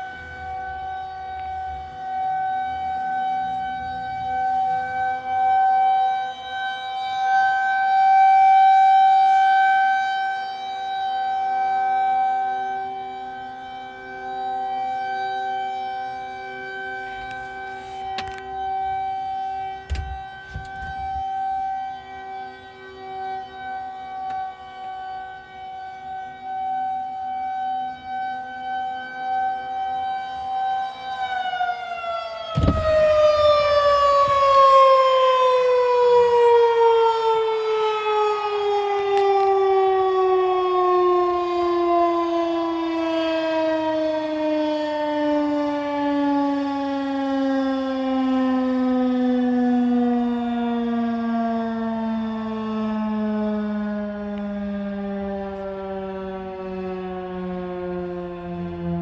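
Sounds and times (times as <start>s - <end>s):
warning siren winding down: 0.0s - 59.0s
short thump: 19.9s - 21.2s, 32.6s - 34.7s.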